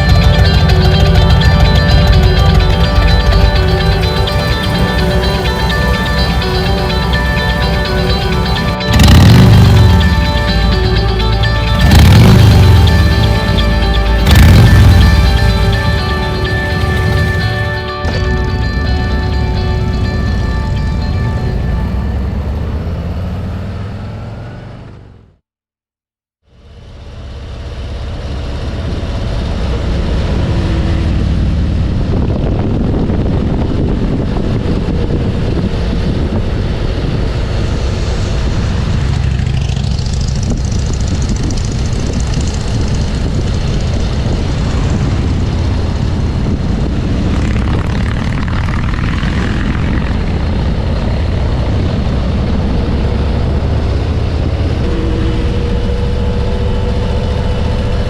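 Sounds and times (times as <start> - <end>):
motorcycle engine droning: 0.0 - 25.4, 26.8 - 58.0
wind and road noise: 0.0 - 25.4, 26.7 - 58.0.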